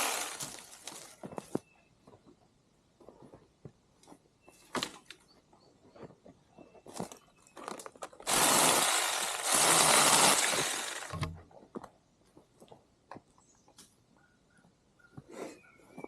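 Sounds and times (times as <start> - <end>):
mini chainsaw cutting brush: 0.0 - 1.0, 8.3 - 11.3.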